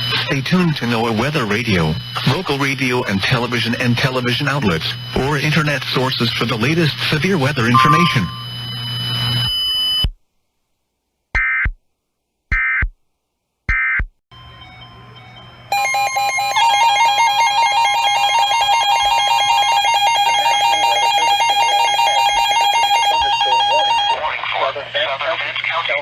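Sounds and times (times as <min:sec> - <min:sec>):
pulsing electronic alert tone: 0:07.8 - 0:08.6.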